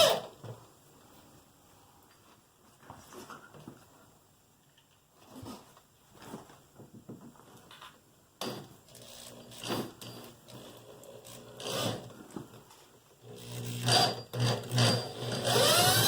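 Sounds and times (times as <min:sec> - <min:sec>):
cordless drill driving screws: 0:13.4 - 0:16.0.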